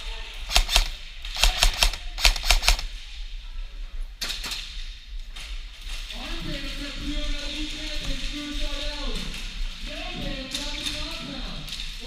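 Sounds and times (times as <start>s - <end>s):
airsoft gun shots: 0.5s - 2.9s.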